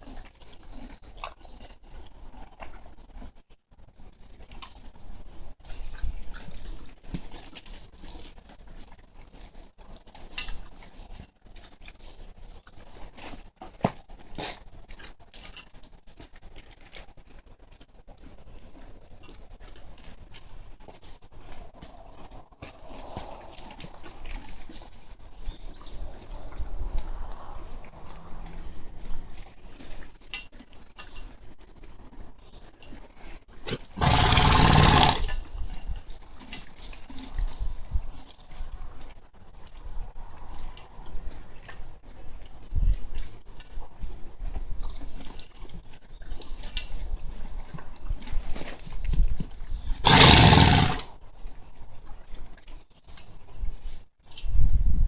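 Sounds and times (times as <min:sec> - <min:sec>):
horse chewing feed: 0:00.0 - 0:53.8
horse snorting: 0:33.6 - 0:35.4, 0:50.0 - 0:51.1.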